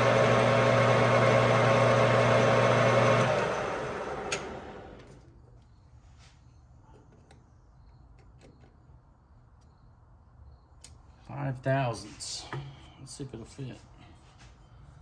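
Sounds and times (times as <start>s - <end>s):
lathe motor winding down: 0.0s - 5.2s.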